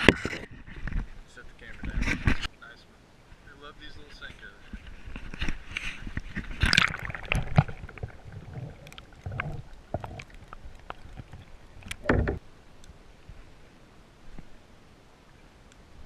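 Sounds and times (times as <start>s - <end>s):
knocks and rustling in a kayak: 0.0s - 2.5s, 4.6s - 12.4s
loud thump: 12.0s - 12.4s.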